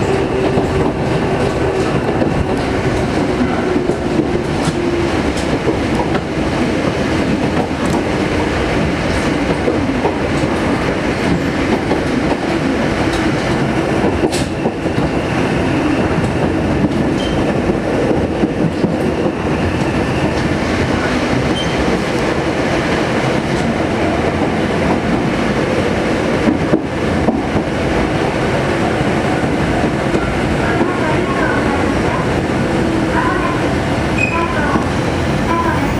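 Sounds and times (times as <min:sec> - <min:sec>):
wheels rumbling on rail: 0:00.0 - 0:35.9.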